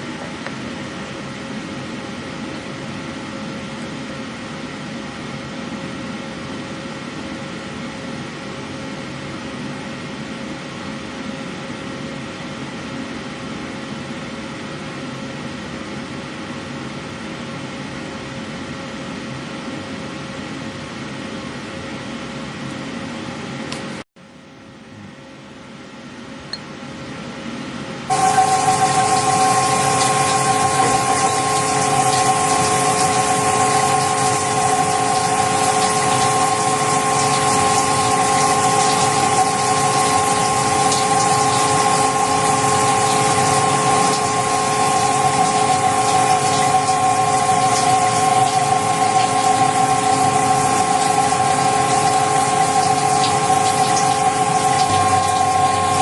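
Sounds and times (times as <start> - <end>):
lathe whining with hiss: 28.1 - 56.0.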